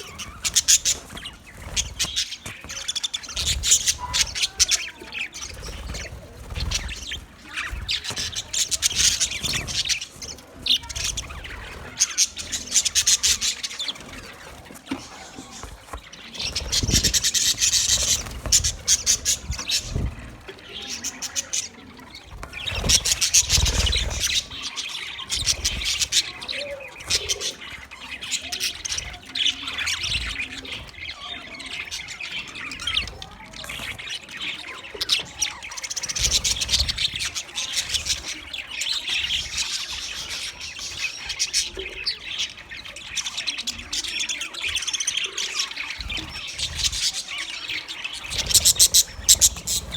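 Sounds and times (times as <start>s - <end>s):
budgerigars chattering and chirping: 0.0s - 49.9s.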